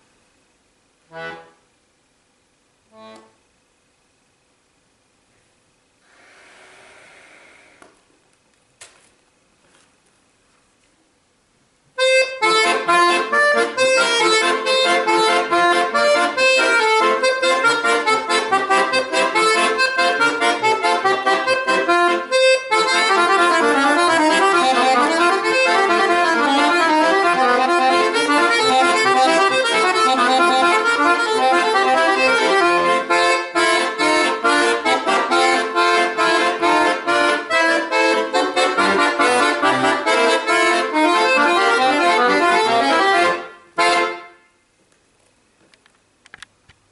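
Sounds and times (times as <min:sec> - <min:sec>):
solo accordion playing: 0:01.1 - 0:01.7, 0:02.9 - 0:03.4, 0:12.0 - 0:44.6.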